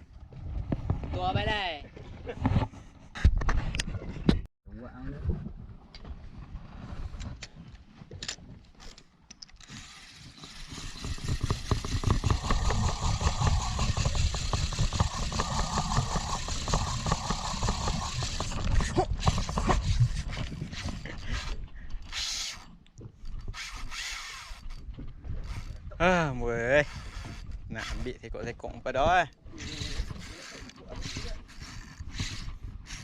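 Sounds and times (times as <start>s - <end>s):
dense rattle: 9.6s - 22.2s
boat engine running: 10.2s - 21.3s.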